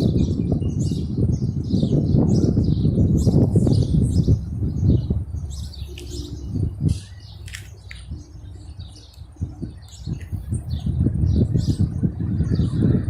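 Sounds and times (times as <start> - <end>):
small birds chirping: 0.0 - 13.0
low rumble: 2.7 - 13.0.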